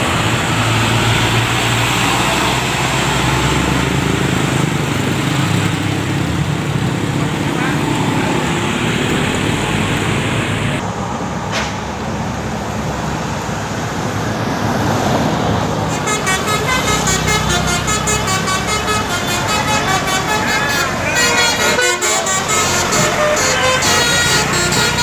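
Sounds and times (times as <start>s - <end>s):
vehicle and street noise: 0.0s - 25.0s
multi-tone bus horn tune: 15.9s - 25.0s.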